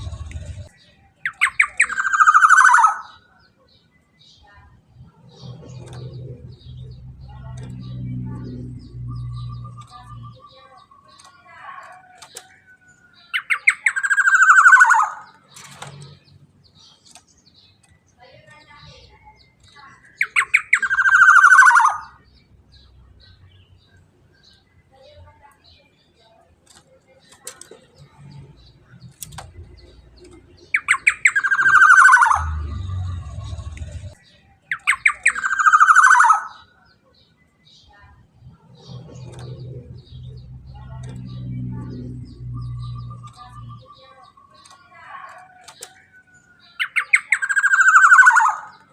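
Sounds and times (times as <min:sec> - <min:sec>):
low rumble: 0:00.0 - 0:00.7, 0:32.2 - 0:34.2, 0:38.4 - 0:43.8
bird calling: 0:00.0 - 0:03.4, 0:05.1 - 0:16.2, 0:16.8 - 0:22.3, 0:29.2 - 0:36.8.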